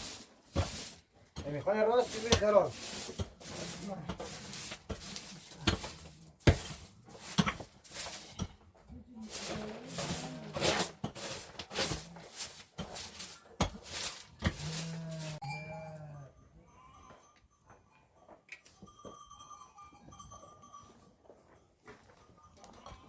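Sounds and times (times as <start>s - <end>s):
sharp knocks and scrapes: 0.0s - 15.4s
livestock bleating: 14.6s - 17.1s.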